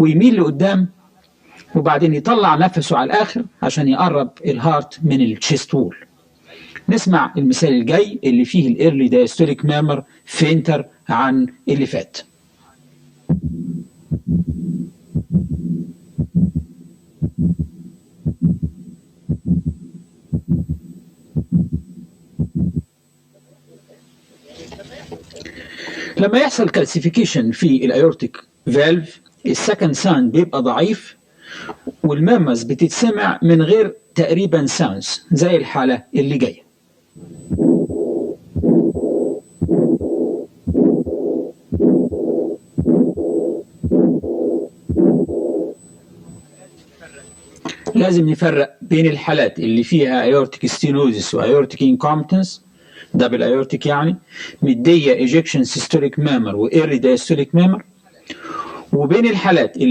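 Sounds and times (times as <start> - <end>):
faint heart murmur: 13.3 - 22.9, 37.3 - 45.8
heartbeat through stethoscope: 13.3 - 22.9, 37.4 - 45.8.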